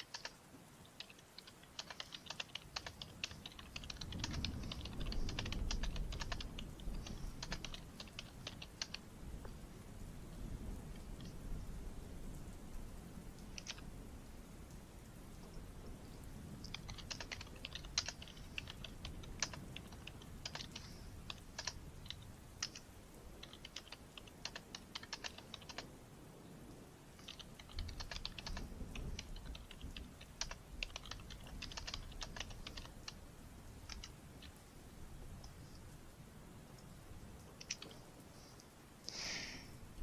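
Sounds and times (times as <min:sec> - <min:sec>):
computer keyboard typing: 0:00.0 - 0:00.4, 0:01.0 - 0:09.0, 0:13.4 - 0:13.8, 0:16.6 - 0:25.9, 0:27.2 - 0:34.6, 0:37.4 - 0:38.0.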